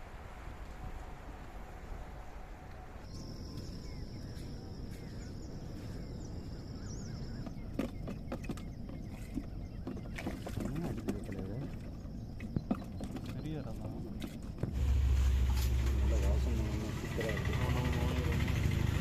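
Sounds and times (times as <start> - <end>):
low rumble: 14.6 - 19.0.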